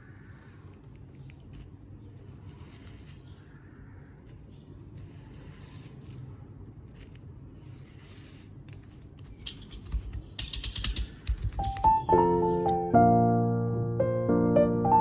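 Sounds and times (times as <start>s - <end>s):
faint handling noise: 0.0s - 12.1s
sharp clicks and taps: 9.2s - 12.8s.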